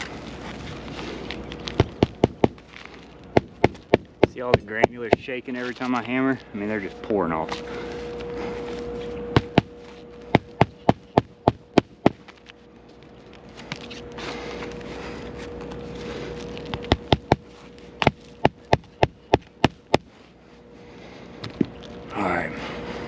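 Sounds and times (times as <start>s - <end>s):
hammer striking shingle roof: 1.8s - 2.6s, 3.4s - 5.3s, 9.3s - 9.7s, 10.3s - 12.2s, 16.8s - 20.1s.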